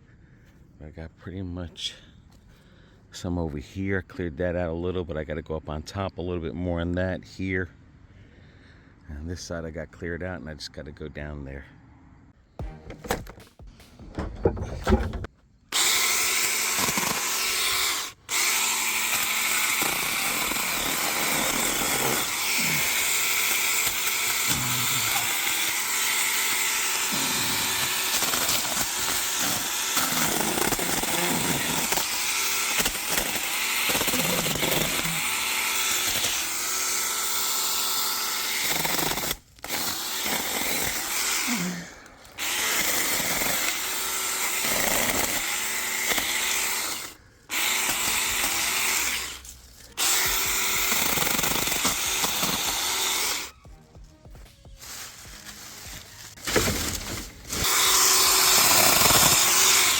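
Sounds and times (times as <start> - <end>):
power cutting tool running: 15.8 - 41.6, 42.4 - 53.6, 55.8 - 59.9.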